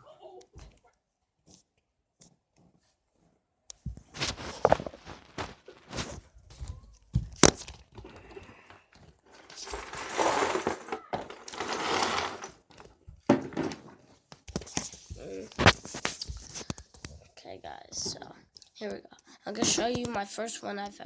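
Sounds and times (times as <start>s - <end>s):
rustling: 2.7s - 17.4s.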